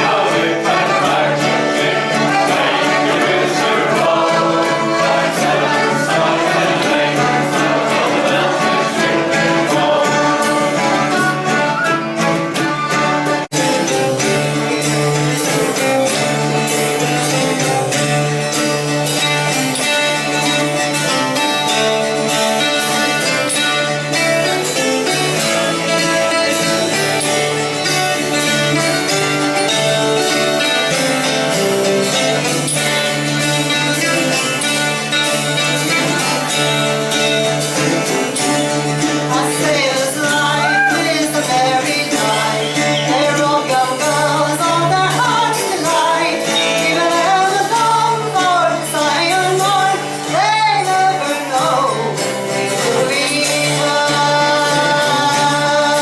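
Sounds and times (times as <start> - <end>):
live folk band music: 0.0 - 56.0
wavering voice singing: 39.2 - 56.0.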